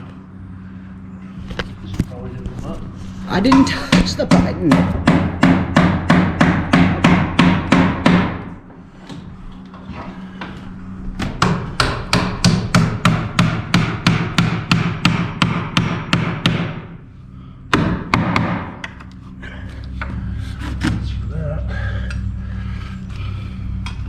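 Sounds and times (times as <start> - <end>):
steady low hum: 0.0 - 24.0
hammer driving nail into wood: 11.2 - 16.8.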